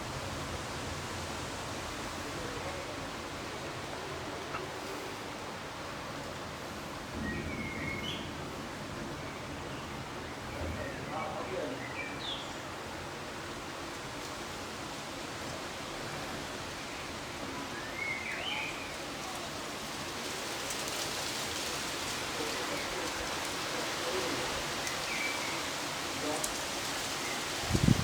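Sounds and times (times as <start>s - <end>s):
rain falling: 0.0s - 28.0s.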